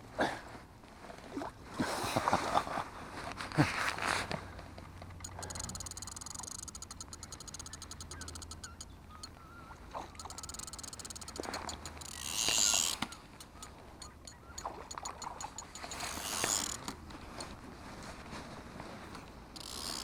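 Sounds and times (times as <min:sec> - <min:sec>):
fishing reel clicking: 0:05.2 - 0:08.9, 0:10.2 - 0:17.0, 0:19.6 - 0:20.0.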